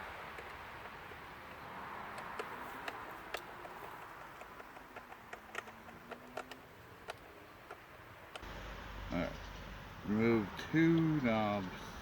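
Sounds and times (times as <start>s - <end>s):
plastic fan parts clicking: 0.3s - 8.4s
faint steady hiss: 6.2s - 12.0s.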